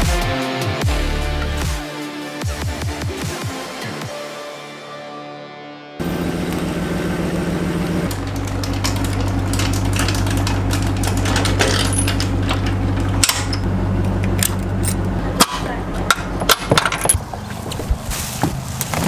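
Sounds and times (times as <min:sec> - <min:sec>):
engine running: 0:06.0 - 0:19.0
knocks and clinks: 0:08.1 - 0:17.5.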